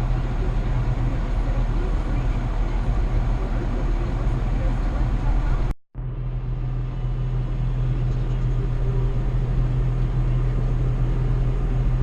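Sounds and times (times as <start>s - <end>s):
tractor diesel engine running: 0.0s - 12.0s.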